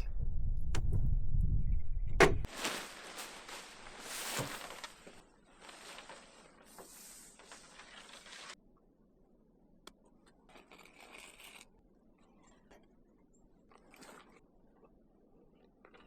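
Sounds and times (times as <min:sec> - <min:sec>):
tarp rustling and scraping: 0:02.5 - 0:08.6.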